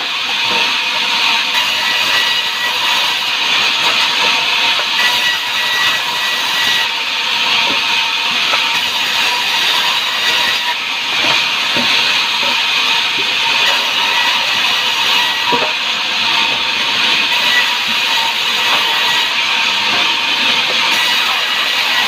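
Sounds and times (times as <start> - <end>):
sawmill saw cutting log: 0.0 - 22.0.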